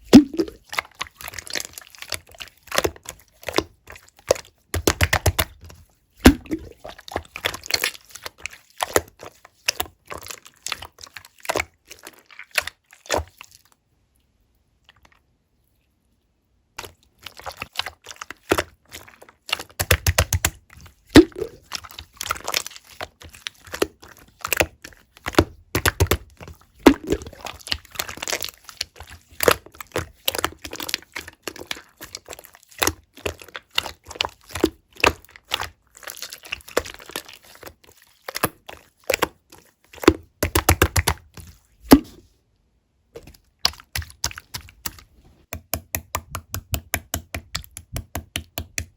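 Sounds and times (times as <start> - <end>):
sticky clicks and bubble pops: 0.0 - 0.6, 6.2 - 6.8, 19.8 - 21.7, 25.3 - 27.5, 40.0 - 41.2, 43.2 - 48.9
slime squished by hand: 0.0 - 13.7, 16.8 - 42.3, 43.2 - 45.2.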